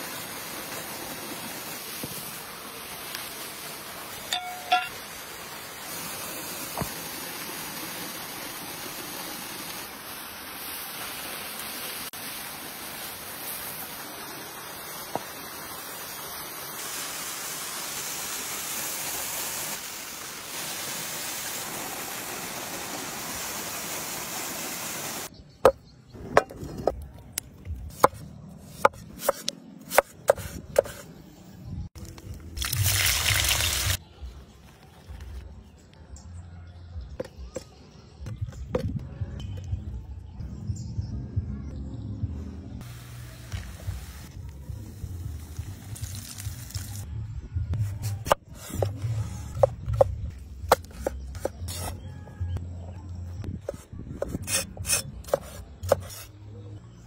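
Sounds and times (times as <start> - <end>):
steady hiss: 0.0 - 25.3
knife chopping on board: 28.8 - 31.0.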